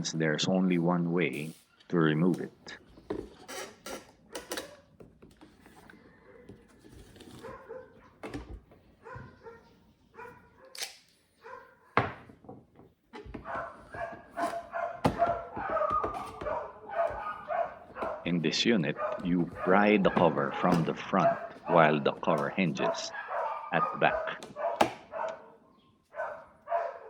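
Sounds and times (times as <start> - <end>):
dog yipping and whining: 13.4 - 18.3.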